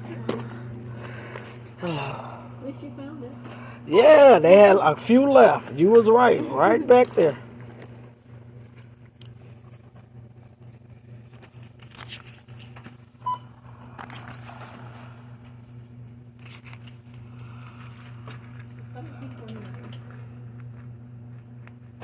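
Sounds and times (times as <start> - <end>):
low electrical hum: 0.0 - 22.0
barcode scanner beep: 13.2 - 13.5.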